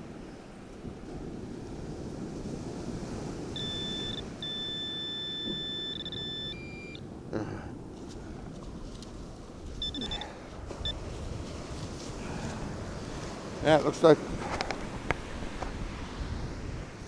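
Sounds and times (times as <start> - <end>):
wind: 0.0 - 17.0
metal detector electronic tone: 3.5 - 7.0, 9.7 - 11.0.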